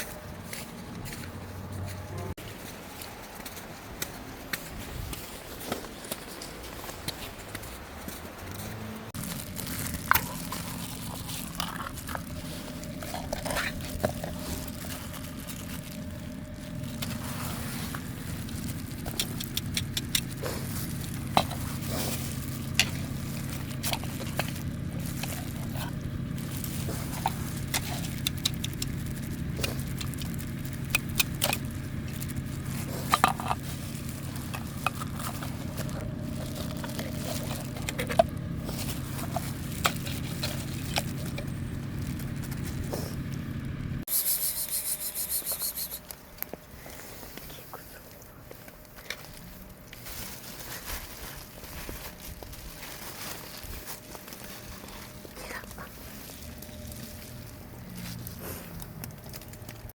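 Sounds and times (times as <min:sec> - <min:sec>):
vehicle engine idling: 0:00.0 - 0:59.9.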